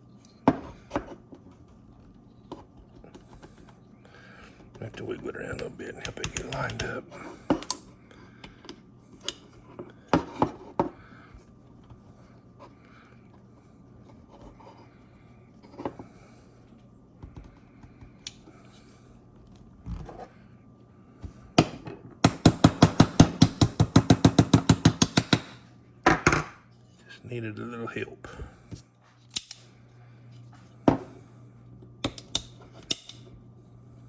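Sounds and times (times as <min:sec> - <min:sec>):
small metal parts clicking: 0:29.3 - 0:29.7.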